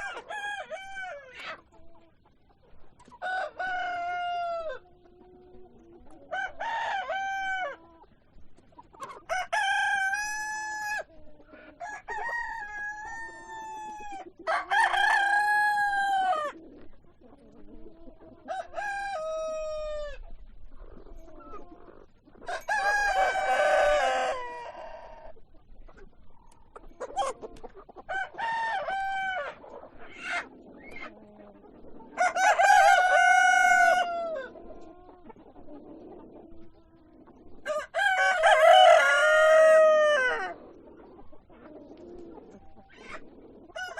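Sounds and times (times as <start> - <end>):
roosters crowing: 0.0 - 1.6, 3.2 - 5.0, 6.2 - 7.9, 9.2 - 11.1, 11.7 - 16.6, 18.4 - 20.2, 22.4 - 25.4, 28.0 - 31.1, 32.0 - 34.7, 37.6 - 40.8, 42.2 - 43.9
chicken calls: 0.0 - 43.9.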